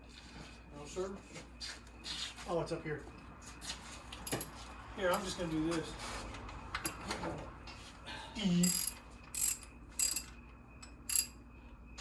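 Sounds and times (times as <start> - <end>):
ratchet wrench clicking: 8.6 - 10.3, 11.1 - 11.4.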